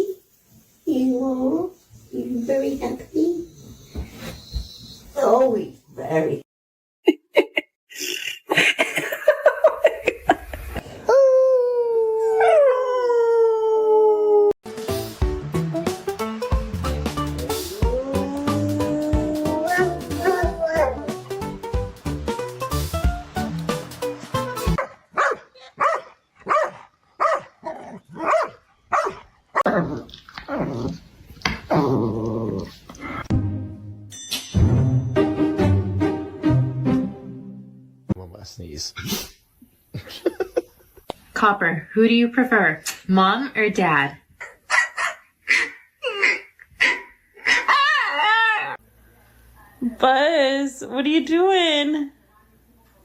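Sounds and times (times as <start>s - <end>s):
background music: 14.7s - 24.8s, 33.3s - 38.1s
dog howling: 17.7s - 21.2s, 47.5s - 48.8s
dog yipping: 18.8s - 21.1s, 24.8s - 29.7s, 44.4s - 48.7s.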